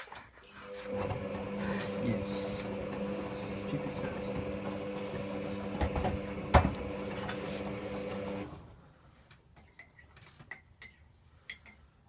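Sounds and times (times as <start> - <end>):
appliance electrical hum: 0.6 - 8.8.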